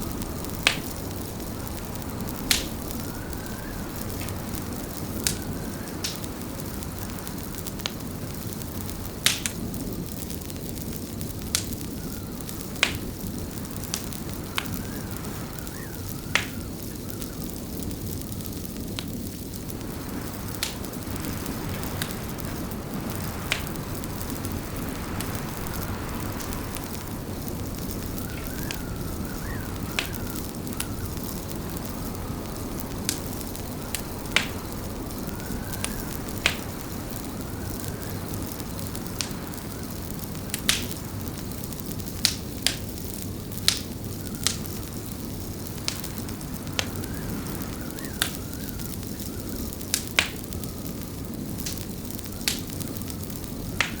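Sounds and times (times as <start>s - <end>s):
wood fire crackling: 0.0s - 54.0s
faint wavering whistle: 2.1s - 4.7s, 26.5s - 32.6s, 46.8s - 49.7s.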